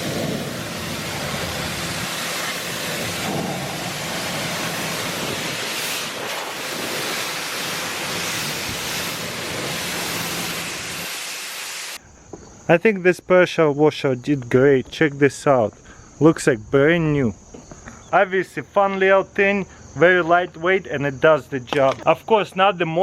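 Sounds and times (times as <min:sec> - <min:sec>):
pressure washer water spray hiss: 0:00.0 - 0:12.0.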